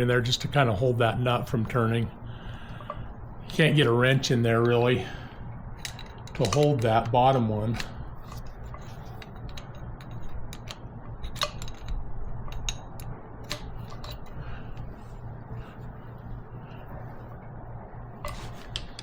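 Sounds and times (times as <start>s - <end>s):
steady low hum: 0.0s - 19.0s
metallic tool clicks: 9.2s - 14.4s.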